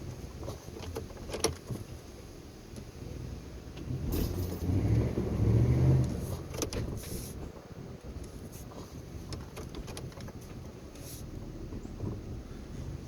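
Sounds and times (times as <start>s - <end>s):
truck engine revving: 3.8s - 7.1s
sharp metallic clank: 4.1s - 4.7s.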